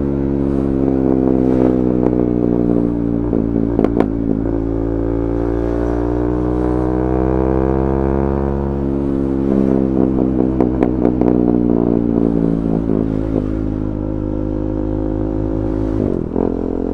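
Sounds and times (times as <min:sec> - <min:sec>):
motorcycle engine running: 0:00.0 - 0:16.9
exhaust pops and crackles: 0:00.8 - 0:04.7, 0:09.9 - 0:13.5.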